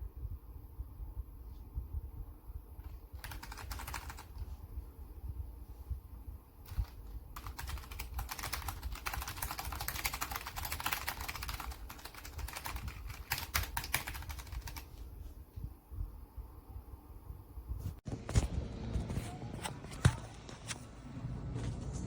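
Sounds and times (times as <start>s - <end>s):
mechanical keyboard typing: 2.8s - 4.4s, 6.6s - 14.9s.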